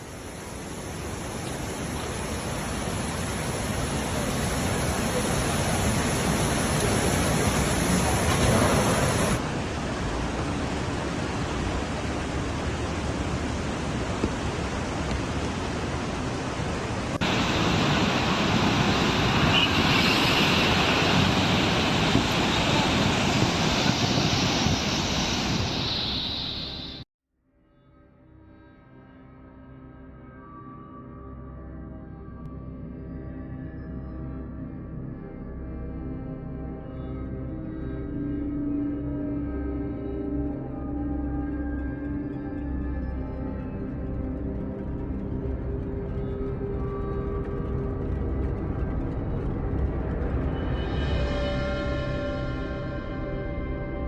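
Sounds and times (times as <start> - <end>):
rushing floodwater: 0.6 - 25.8.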